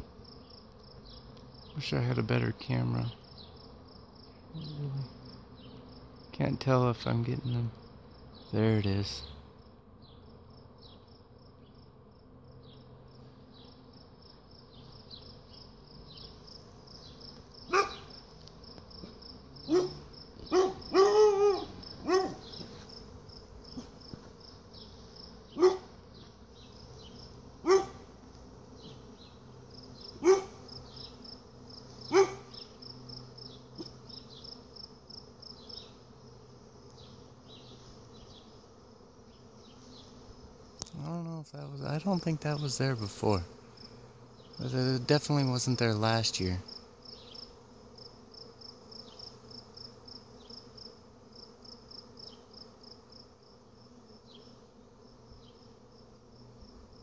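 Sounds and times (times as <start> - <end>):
bees humming: 0.0 - 57.0
dog barking: 17.7 - 18.0, 19.7 - 22.4, 25.6 - 25.9, 27.6 - 28.0, 30.2 - 30.6, 32.1 - 32.5.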